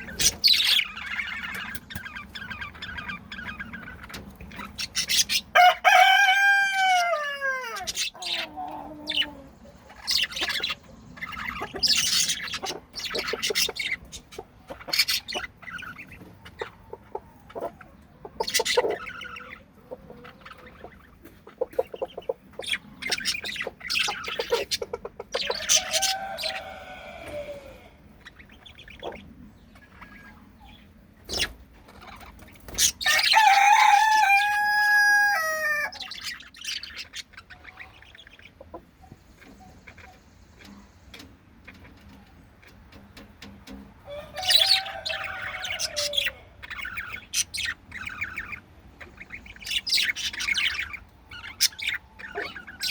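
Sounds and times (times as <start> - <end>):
budgies chattering: 0.0 - 5.8, 6.5 - 52.9
larger bird crowing: 5.1 - 9.5, 25.3 - 28.0, 32.8 - 36.4, 44.0 - 48.5.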